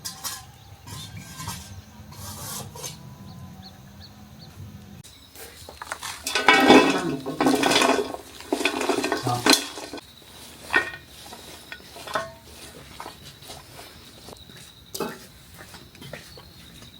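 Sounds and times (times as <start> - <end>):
dishes and utensils clattering: 0.0 - 3.0, 5.8 - 10.0, 10.6 - 13.3, 15.0 - 15.3.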